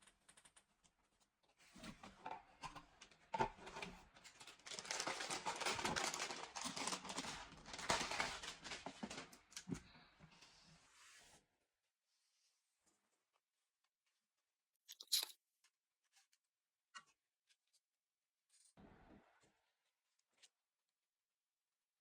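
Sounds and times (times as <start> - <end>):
packaging crinkling: 4.6 - 8.9
small clicks: 14.9 - 15.3.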